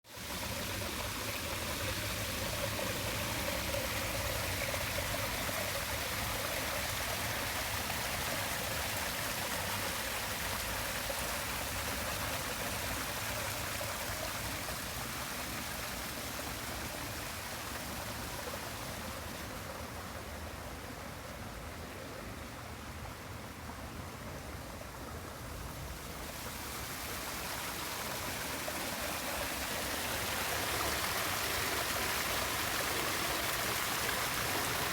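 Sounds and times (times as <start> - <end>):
small waterfall splashing: 0.1 - 34.9.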